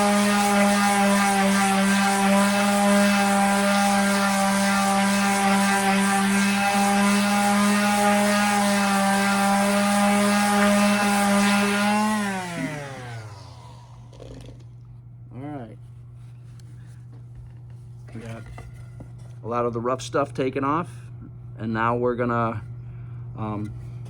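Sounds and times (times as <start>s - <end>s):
palm sander sanding wood: 0.0s - 14.1s.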